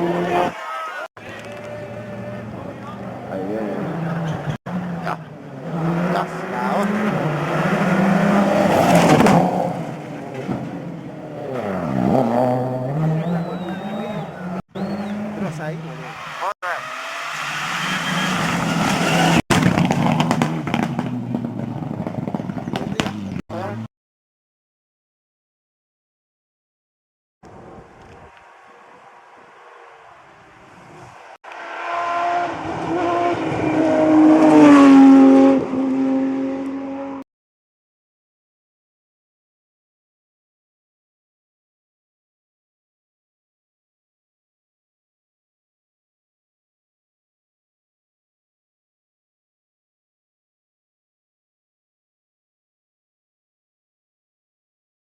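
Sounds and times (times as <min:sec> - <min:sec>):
rally car engine passing: 0:01.4 - 0:23.9, 0:27.6 - 0:37.2
car re-accelerating: 0:01.5 - 0:23.9, 0:28.5 - 0:37.2
engine crackles: 0:04.0 - 0:23.8.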